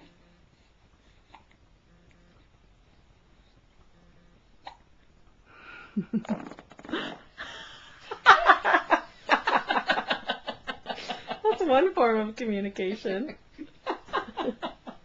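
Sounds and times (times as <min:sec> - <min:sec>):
person hiccuping: 0:04.6 - 0:04.8.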